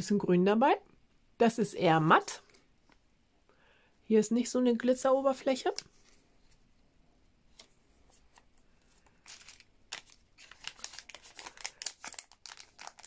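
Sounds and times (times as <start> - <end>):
plastic packaging crinkling: 8.8 - 13.0.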